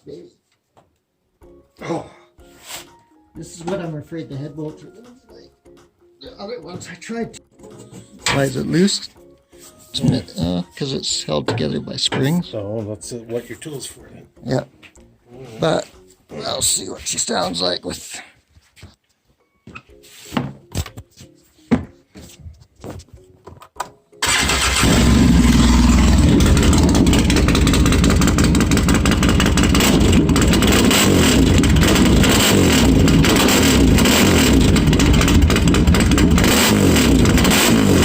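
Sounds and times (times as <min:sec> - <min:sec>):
atv engine running: 0:24.2 - 0:38.0.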